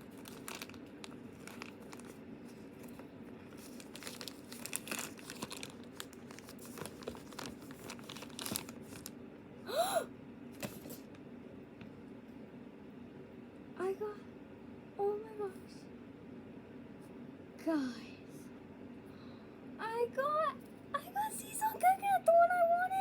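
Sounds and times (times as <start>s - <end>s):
plastic bag crinkling and tearing: 0.0s - 9.2s.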